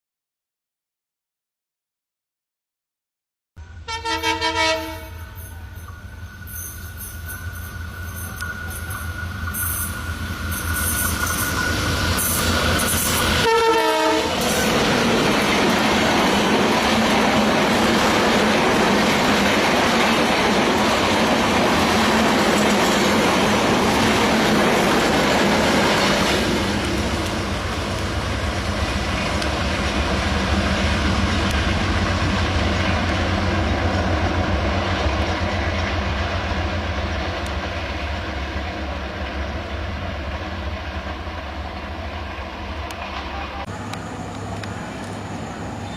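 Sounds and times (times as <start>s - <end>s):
train running on rails: 3.6s - 45.9s
train horn: 3.7s - 5.7s, 13.4s - 14.6s, 42.9s - 43.8s.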